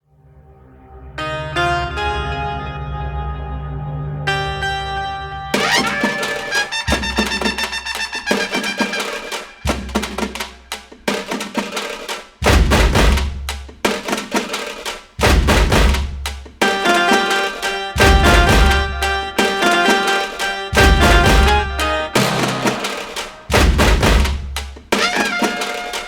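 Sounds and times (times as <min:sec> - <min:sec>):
upbeat instrumental music: 0:01.2 - 0:26.0
steady drum beat: 0:05.6 - 0:26.0.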